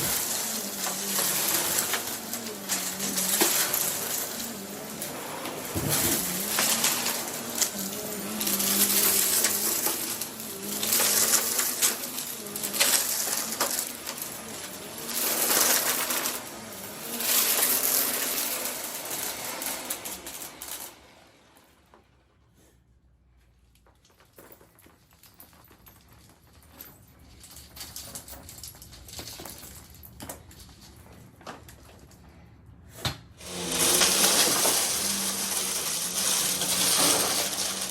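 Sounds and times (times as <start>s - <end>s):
debris clicking and rattling: 0.0s - 20.9s, 23.8s - 32.2s, 33.4s - 37.9s
vacuum cleaner running: 0.0s - 22.2s, 33.4s - 37.9s.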